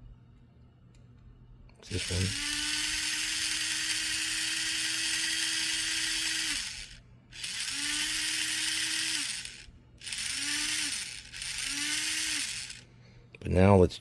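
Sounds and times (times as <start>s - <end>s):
small electric motor whirring: 1.9s - 12.9s.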